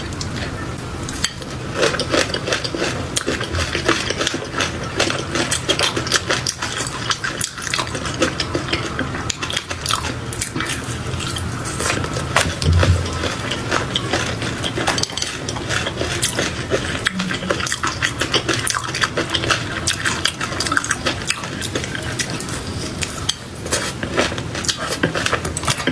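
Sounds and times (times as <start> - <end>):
biting and chewing food: 0.0 - 25.9.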